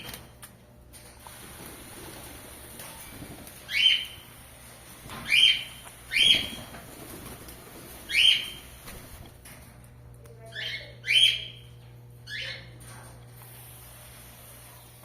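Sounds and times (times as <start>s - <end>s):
parakeets calling: 3.6s - 4.4s, 5.2s - 6.7s, 7.9s - 8.9s, 10.4s - 12.8s.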